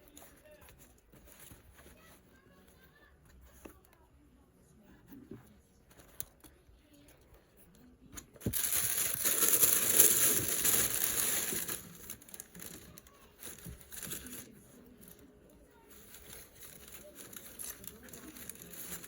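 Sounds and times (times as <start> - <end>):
packing material crinkling: 8.4 - 15.2, 15.8 - 19.0.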